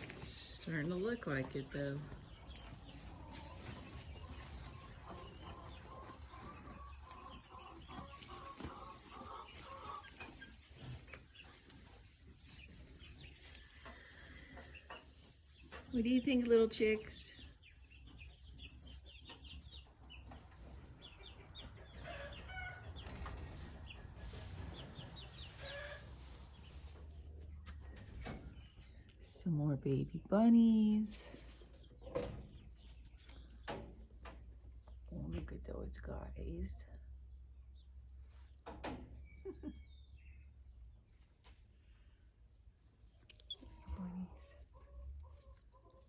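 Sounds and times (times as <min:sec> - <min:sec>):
chickens clucking: 0:00.0 - 0:29.2, 0:31.0 - 0:35.6, 0:37.4 - 0:46.0.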